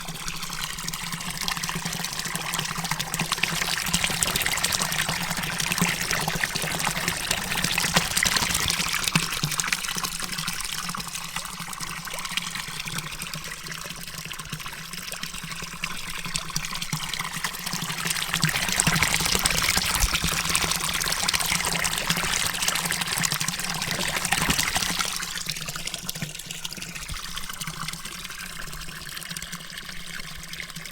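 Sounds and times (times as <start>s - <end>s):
fountain water splashing: 0.0s - 13.3s, 16.3s - 26.6s.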